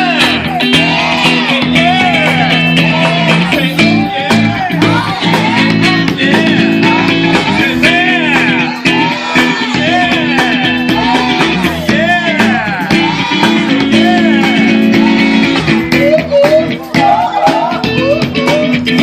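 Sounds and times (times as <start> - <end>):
lead guitar bending notes: 0.0 - 19.0
low chords and bass: 0.0 - 19.0.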